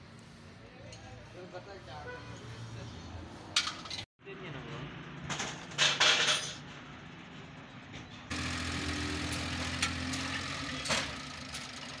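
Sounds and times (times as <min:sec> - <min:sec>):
truck diesel engine idling: 0:08.3 - 0:09.8.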